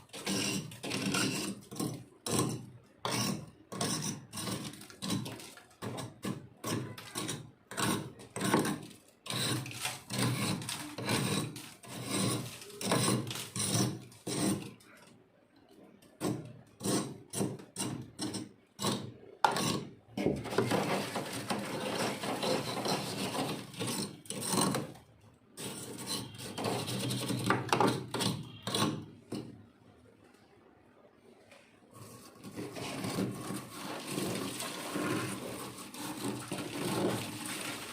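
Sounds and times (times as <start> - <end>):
freezer frost crunching: 32.5 - 37.9.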